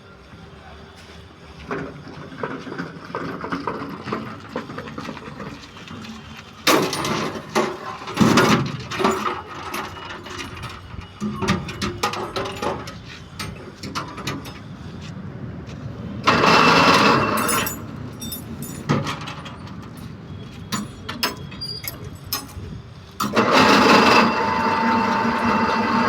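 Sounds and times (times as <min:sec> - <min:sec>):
hoist mechanism clicks and clanks: 0:16.3 - 0:25.9
hoist motor humming: 0:20.8 - 0:26.0.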